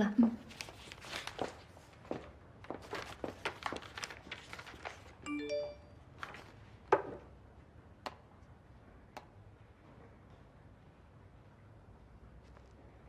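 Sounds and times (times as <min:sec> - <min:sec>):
electronic chime: 0:05.3 - 0:06.0.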